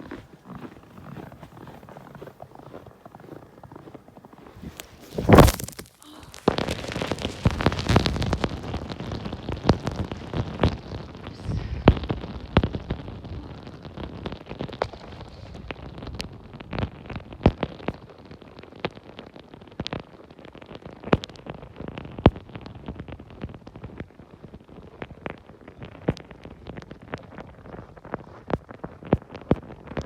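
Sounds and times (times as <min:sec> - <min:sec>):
icy snow ticking: 0:00.0 - 0:30.0
snowstorm wind: 0:03.3 - 0:20.3
wind hiss on microphone: 0:04.5 - 0:30.0.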